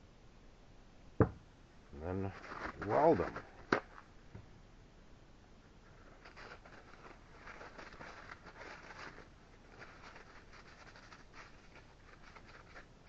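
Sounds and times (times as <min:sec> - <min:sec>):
small metal parts rustling: 0:05.9 - 0:12.9.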